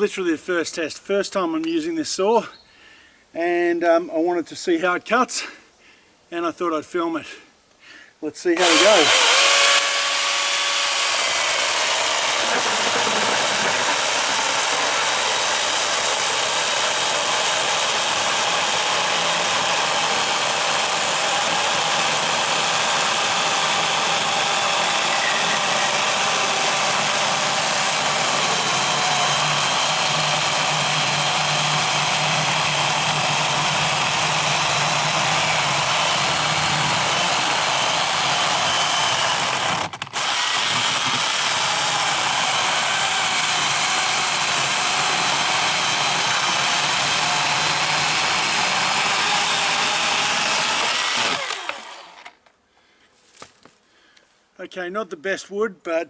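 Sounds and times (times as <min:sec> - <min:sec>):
chainsaw cutting through log: 0:08.6 - 0:52.5.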